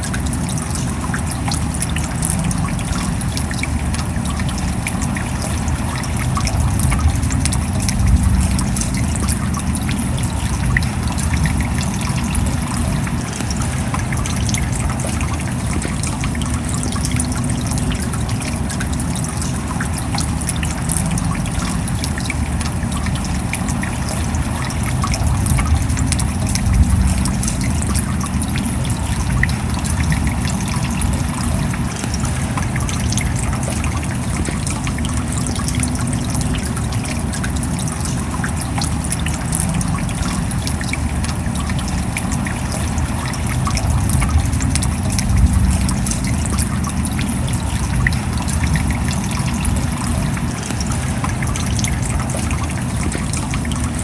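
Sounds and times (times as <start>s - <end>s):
steady rain: 0.0s - 54.0s
water trickling: 0.0s - 54.0s.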